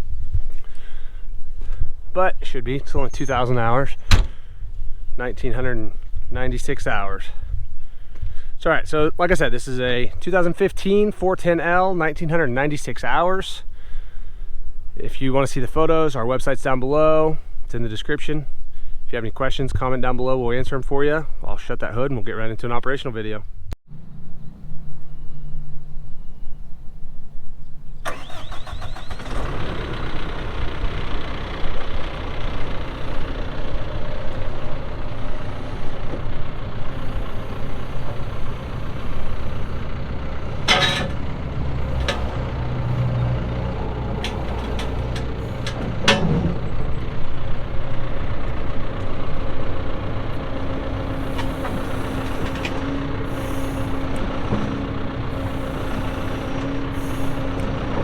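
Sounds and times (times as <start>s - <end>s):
diesel engine cranking and running: 0.0s - 8.3s, 28.0s - 58.0s.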